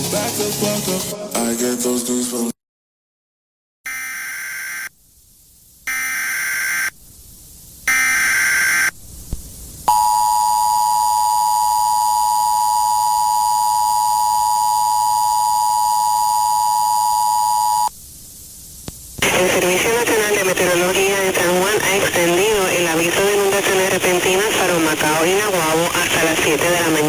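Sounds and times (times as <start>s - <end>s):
two-tone attention signal: 3.9s - 4.9s, 7.9s - 8.9s, 9.9s - 17.9s
buzzy digital header bursts: 3.9s - 17.9s, 18.6s - 27.0s.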